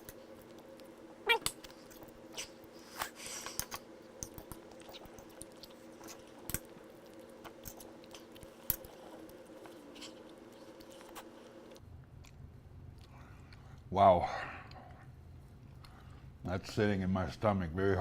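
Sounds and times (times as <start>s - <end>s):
person chewing: 0.0s - 13.9s
steady low hum: 0.0s - 18.0s.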